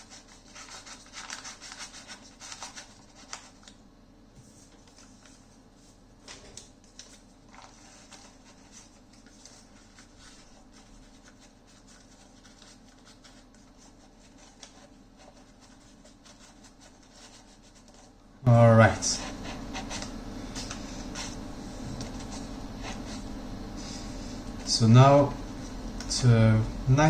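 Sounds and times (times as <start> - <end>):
paper scratching and rubbing: 0.0 - 3.7, 6.9 - 18.1, 18.9 - 23.3.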